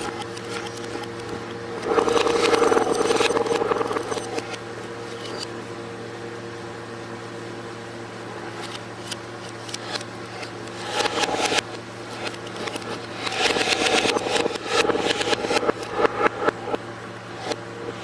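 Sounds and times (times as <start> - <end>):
low machine hum: 0.0 - 8.4.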